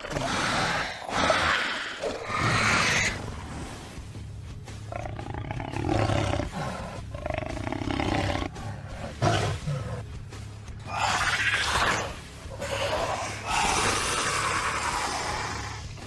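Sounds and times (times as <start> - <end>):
monster roaring: 10.9 - 15.8.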